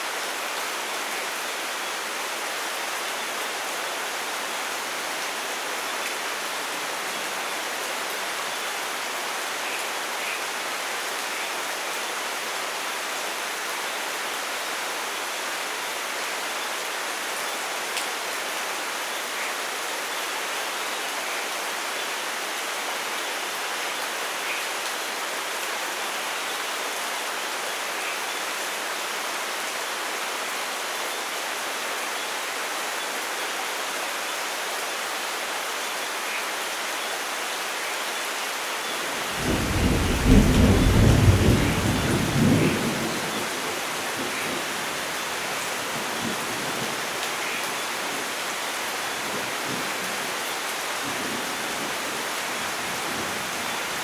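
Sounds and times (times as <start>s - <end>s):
steady rain: 0.0s - 54.0s
thunder rumble: 39.4s - 43.6s.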